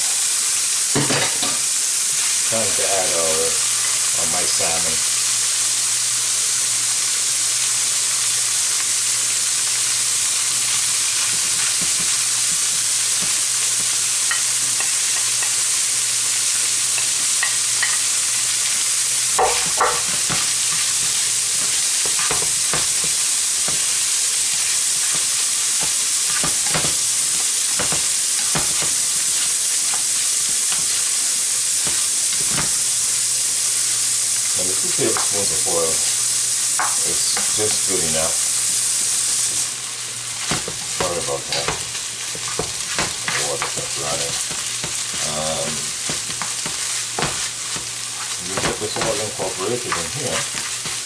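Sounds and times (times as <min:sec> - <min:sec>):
fish sizzling in hot oil: 0:00.0 - 0:51.0
spatula scraping a pan: 0:16.9 - 0:32.8, 0:40.3 - 0:51.0.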